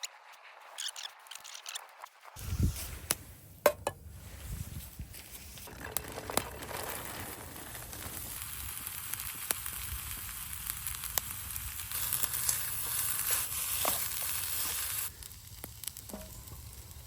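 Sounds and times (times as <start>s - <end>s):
food sizzling in a pan: 6.8s - 17.0s.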